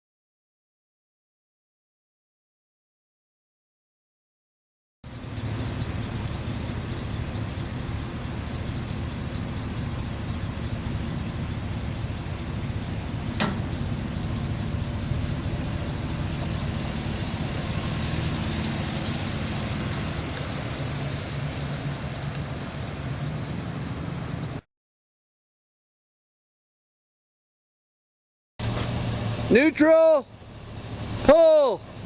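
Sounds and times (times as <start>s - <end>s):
truck engine running: 5.0s - 24.6s, 28.6s - 32.0s
sharp click: 13.4s - 13.7s.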